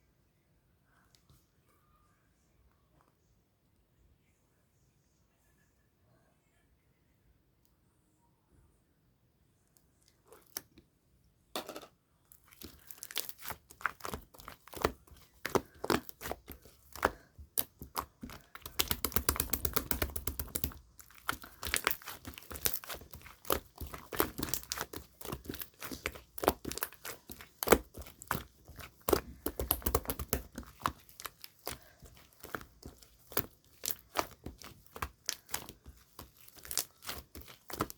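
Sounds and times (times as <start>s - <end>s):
slime squeezed with wet crackling: 12.3s - 37.9s.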